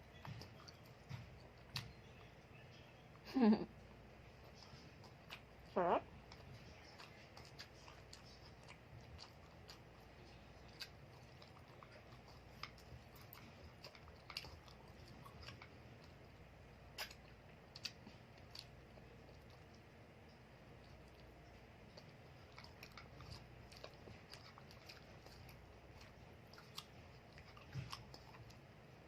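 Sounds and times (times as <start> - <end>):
quiet chewing: 0.0 - 29.0.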